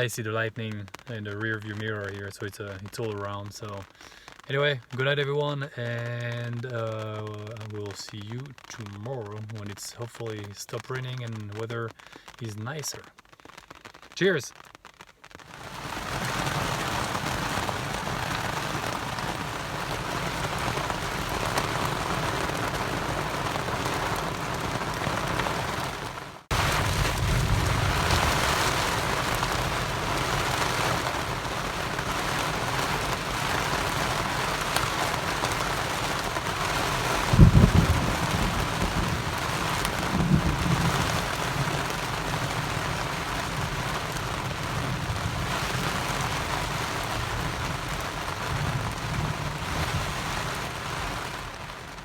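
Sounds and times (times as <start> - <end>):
heavy rain falling: 0.0 - 52.0
thunder rumbling: 15.5 - 52.0.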